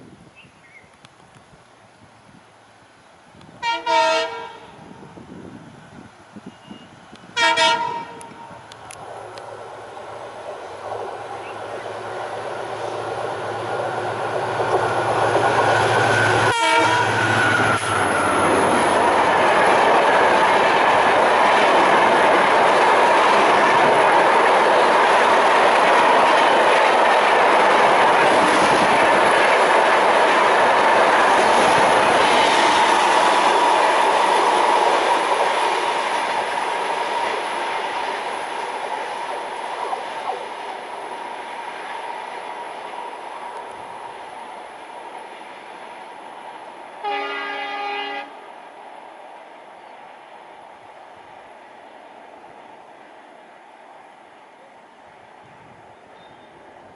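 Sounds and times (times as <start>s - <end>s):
locomotive horn: 3.6s - 4.8s, 7.4s - 8.5s, 16.2s - 17.9s, 47.0s - 48.4s
locomotive engine hum: 7.0s - 48.7s
train coaches clattering on rails: 10.3s - 48.3s.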